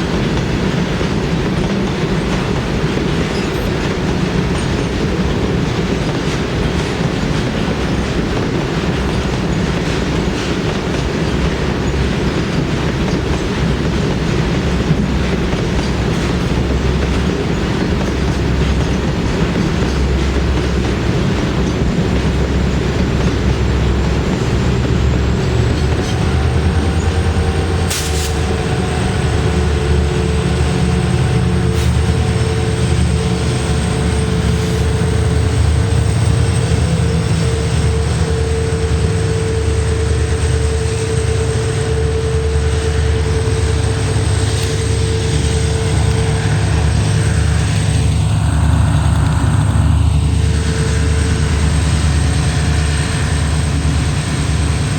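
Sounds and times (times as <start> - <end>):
diesel locomotive engine rumble: 0.0 - 54.9
rolling of tanker wagons: 0.0 - 54.9
steady whine: 12.8 - 54.9.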